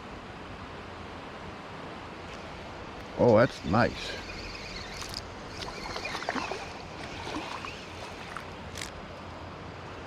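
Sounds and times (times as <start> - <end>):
running creek: 0.0 - 10.0
water splashing and sloshing: 4.8 - 9.3
small clicks: 8.3 - 9.0.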